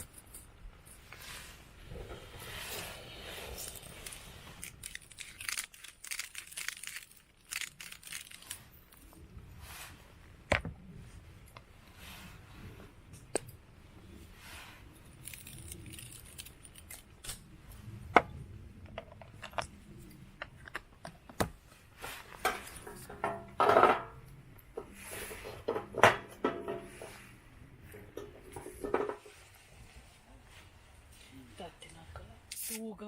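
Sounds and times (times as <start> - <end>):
rustling: 0.0 - 13.2.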